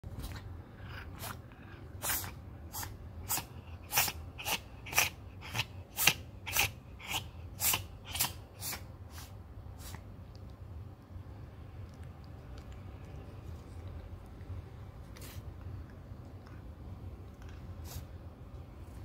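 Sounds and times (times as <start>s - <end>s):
cat sneezing: 0.2s - 10.1s, 15.1s - 15.5s, 17.8s - 18.2s.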